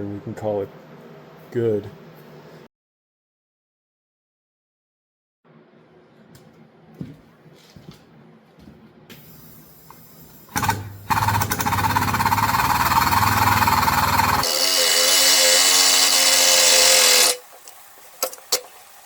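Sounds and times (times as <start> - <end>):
loud buzzing power tool: 10.6 - 17.5.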